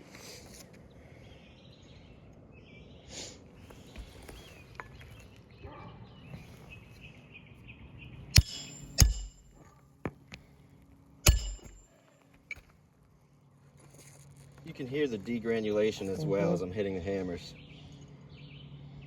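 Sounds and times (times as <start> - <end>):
hammer driving nails: 8.4 - 9.6, 11.3 - 11.8.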